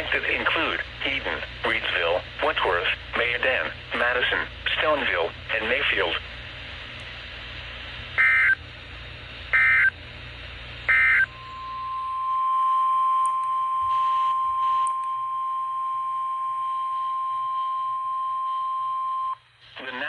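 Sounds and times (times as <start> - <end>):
steady warning alarm tone: 8.2 - 8.6, 9.5 - 10.0, 10.9 - 19.4.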